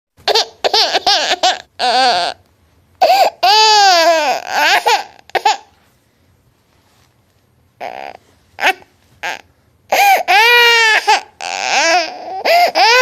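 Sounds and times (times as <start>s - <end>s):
baby crying: 0.2s - 2.4s, 3.0s - 5.7s, 7.8s - 13.0s.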